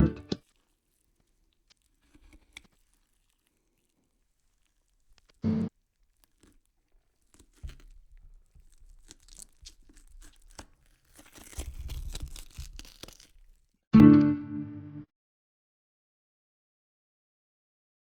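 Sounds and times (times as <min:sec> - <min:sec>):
scraping and crunching with clicks: 0:00.3 - 0:13.8.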